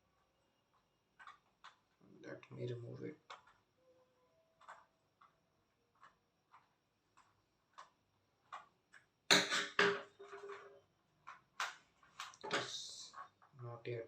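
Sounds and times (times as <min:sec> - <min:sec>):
clatter and scrape of handling: 0:09.5 - 0:11.4.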